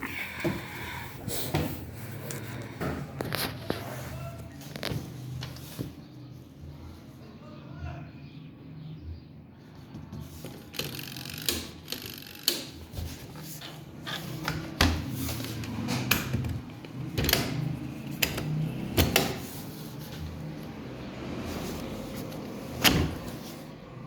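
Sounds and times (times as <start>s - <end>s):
washing machine motor hum: 13.8s - 24.0s.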